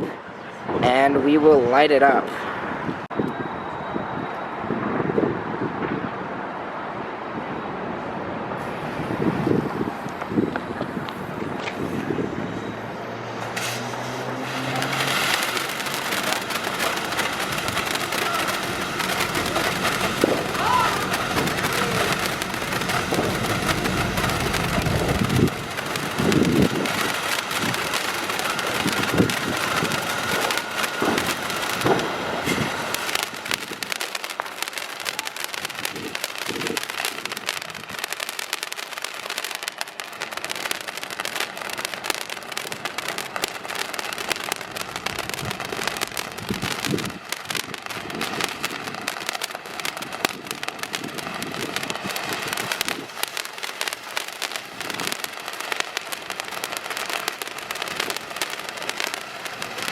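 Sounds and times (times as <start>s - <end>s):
faint firework whistle: 3.1s - 5.3s, 8.6s - 37.8s
firework crackling hiss: 8.6s - 59.9s.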